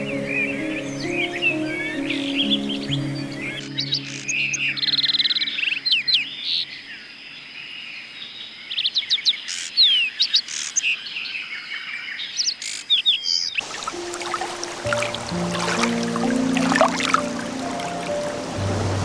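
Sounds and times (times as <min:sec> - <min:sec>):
birds chirping and whistling: 0:00.0 - 0:07.1, 0:12.4 - 0:18.5.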